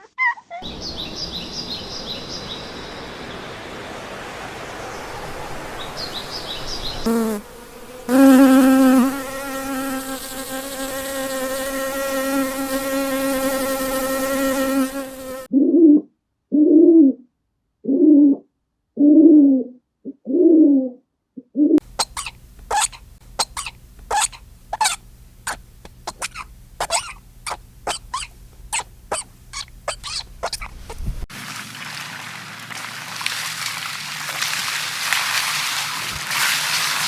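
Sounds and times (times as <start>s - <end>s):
animal calls bending in pitch: 21.8s - 31.2s
long steady buzz: 21.8s - 31.2s
quick sharp chirps: 21.8s - 31.2s.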